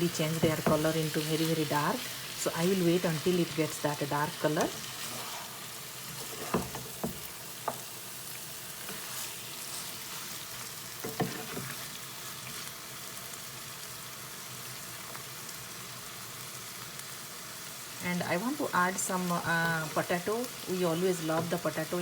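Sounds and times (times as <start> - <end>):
meat sizzling in a pot: 0.0 - 22.0
spatula knocking and scraping: 0.4 - 0.9, 6.1 - 7.9, 11.0 - 11.8.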